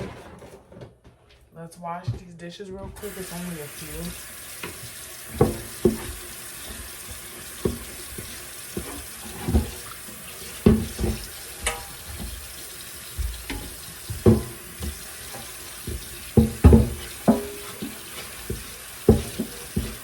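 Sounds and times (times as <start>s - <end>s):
tap running into sink: 3.0s - 20.0s
dishes clattering: 10.6s - 12.5s, 13.2s - 20.0s.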